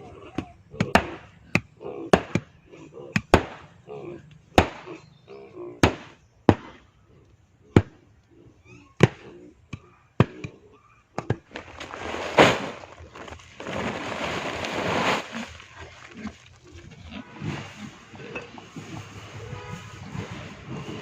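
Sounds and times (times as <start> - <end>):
loud scraping or rustling: 11.5 - 21.0.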